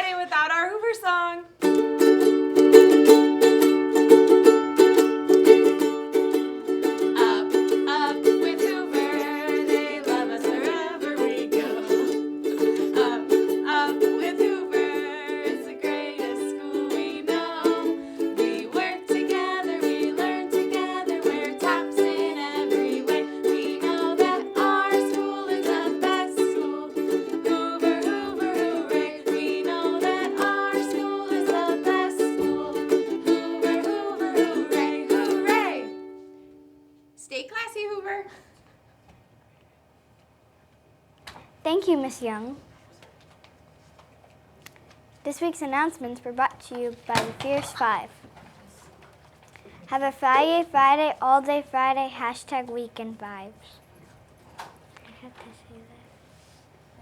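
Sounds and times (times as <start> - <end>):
strummed string instrument chords: 1.6 - 36.5
person singing: 6.6 - 36.0.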